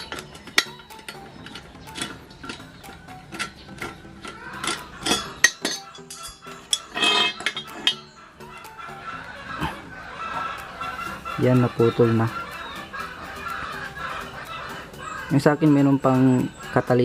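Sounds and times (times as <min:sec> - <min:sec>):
metallic tool clicks: 0:00.0 - 0:08.0.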